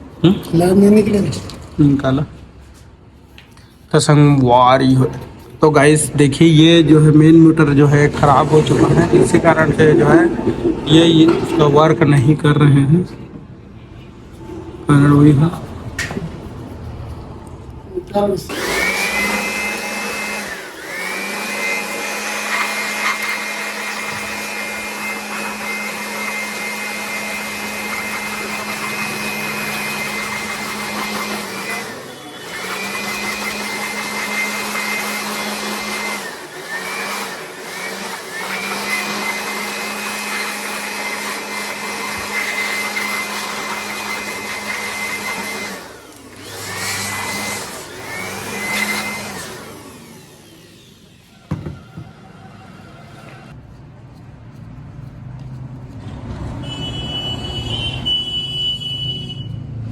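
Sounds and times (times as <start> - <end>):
electric air blower whine: 5.1 - 12.3, 18.2 - 53.6.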